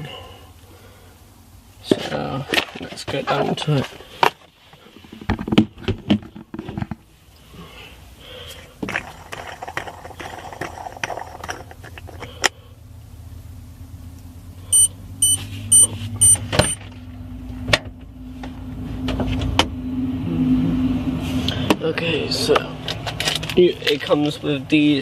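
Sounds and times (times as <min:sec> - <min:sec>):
low steady hum: 0:00.0 - 0:25.0
short high electronic beeps: 0:14.7 - 0:16.8.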